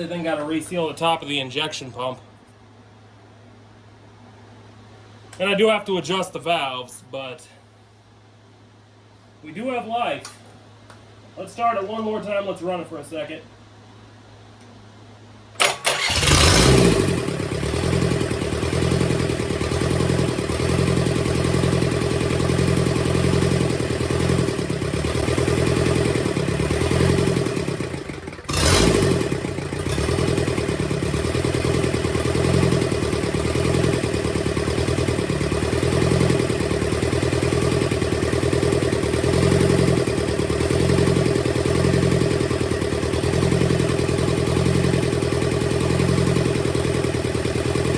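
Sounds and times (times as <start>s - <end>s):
diesel engine cranking on starter: 15.6s - 47.9s
diesel engine idling: 15.6s - 47.9s.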